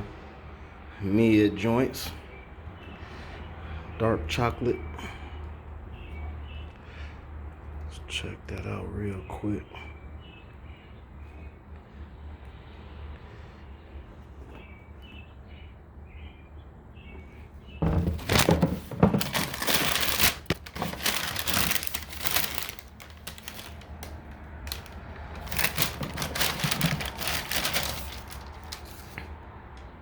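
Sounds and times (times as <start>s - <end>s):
packaging crinkling and rustling: 17.8s - 29.3s.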